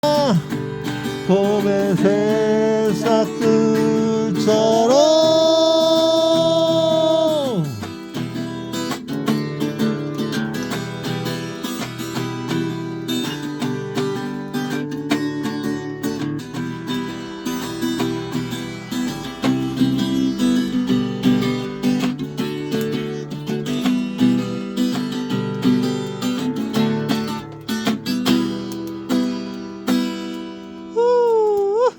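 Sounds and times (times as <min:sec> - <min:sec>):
person singing long note: 0:00.0 - 0:00.5, 0:01.3 - 0:07.8
acoustic guitar chords: 0:00.0 - 0:31.9.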